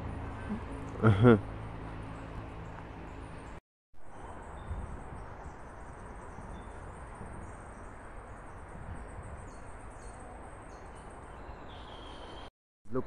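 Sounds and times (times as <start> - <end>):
outdoor background noise: 0.0 - 13.0
faint high bird chirps: 4.2 - 12.5.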